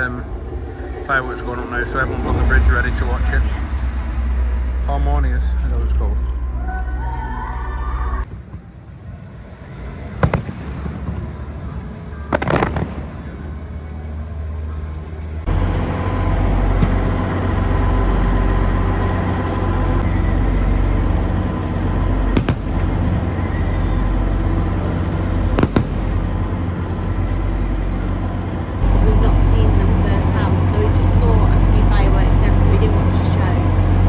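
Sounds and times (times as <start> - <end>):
loud low rumble: 0.0 - 34.0
fireworks bangs: 8.3 - 13.7, 21.0 - 34.0.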